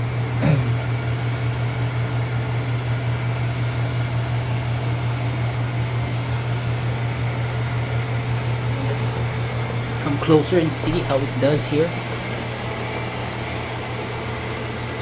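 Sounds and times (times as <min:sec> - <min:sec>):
robot vacuum humming: 0:06.8 - 0:14.6.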